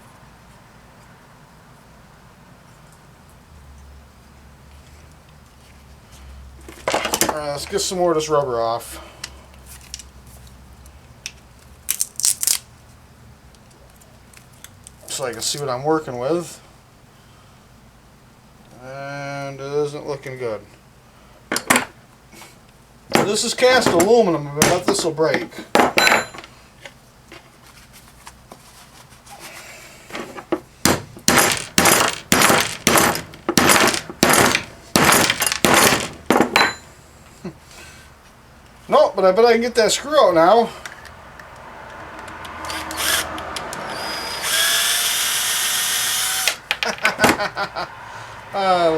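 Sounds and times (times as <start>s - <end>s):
rubber tearing crackles: 11.9s - 12.7s.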